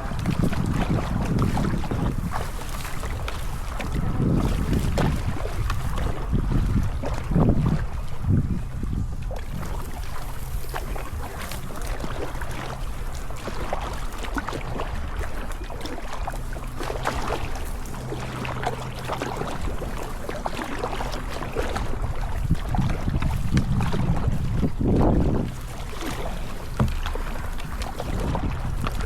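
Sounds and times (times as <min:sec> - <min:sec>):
paddle blades splashing: 0:00.0 - 0:29.0
wind rumble on microphone: 0:00.0 - 0:29.0.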